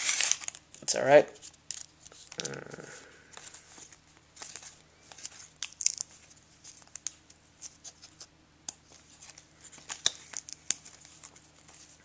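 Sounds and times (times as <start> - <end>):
wrapper crinkling and tearing: 0.0 - 1.0, 3.8 - 8.2, 9.1 - 12.0
cards clicking and sliding: 3.3 - 12.0.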